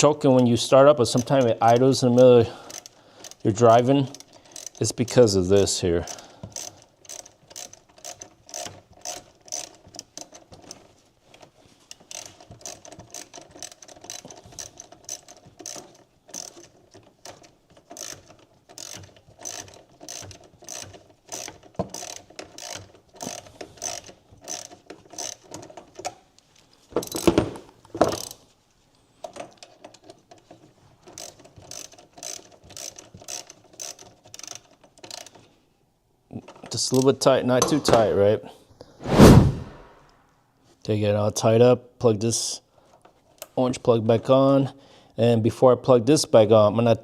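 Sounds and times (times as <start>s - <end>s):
socket ratchet clicking: 1.1s - 5.4s, 6.0s - 10.8s, 12.0s - 26.2s, 28.0s - 28.4s, 29.4s - 35.4s.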